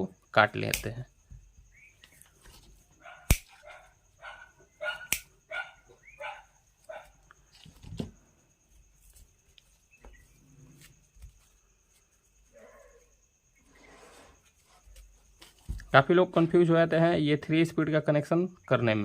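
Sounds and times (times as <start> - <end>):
dog barking: 3.0 - 7.2.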